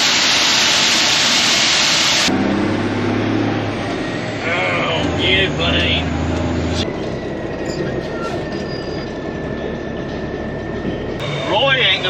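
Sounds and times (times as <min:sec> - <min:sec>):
loud steady hiss: 0:00.0 - 0:02.3
truck diesel engine running: 0:00.0 - 0:12.0.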